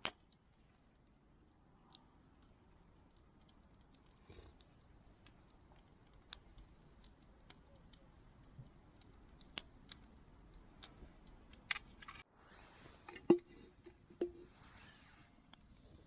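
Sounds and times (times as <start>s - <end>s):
cooking gear clicks and taps: 0.0s - 12.3s, 13.0s - 14.6s
faint hiss: 12.3s - 16.0s.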